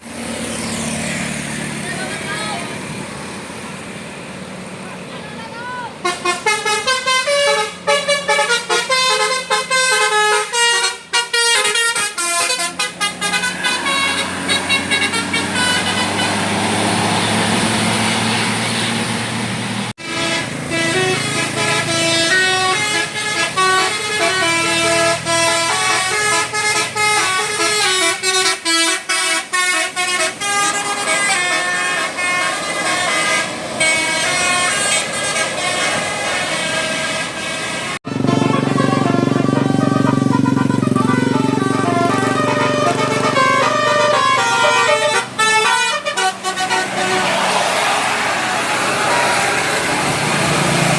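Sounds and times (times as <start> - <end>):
bus musical horn tune: 6.0 - 17.7, 19.9 - 50.3
rushing noise: 45.4 - 50.9.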